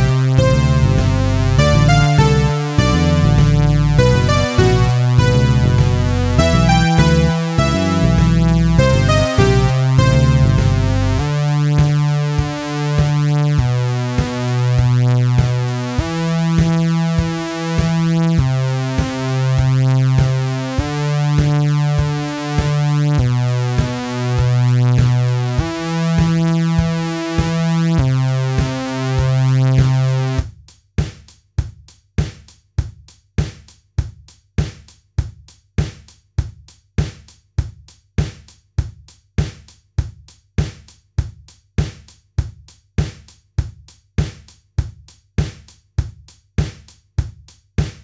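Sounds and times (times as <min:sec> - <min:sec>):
synthesizer music: 0:00.0 - 0:30.4
drum machine beat: 0:00.0 - 0:48.0.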